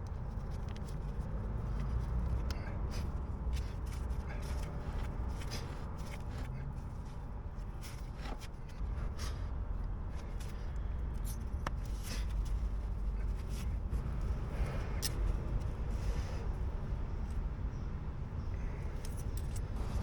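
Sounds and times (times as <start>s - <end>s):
hands handling tools and parts: 0.0s - 9.5s, 10.1s - 15.4s, 18.9s - 20.0s
steady low rumble: 0.0s - 20.0s.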